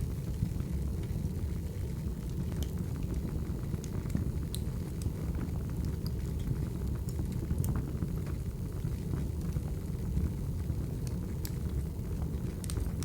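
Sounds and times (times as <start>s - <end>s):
fire crackles and pops: 0.0s - 13.0s
low rumble of flames: 0.0s - 13.0s.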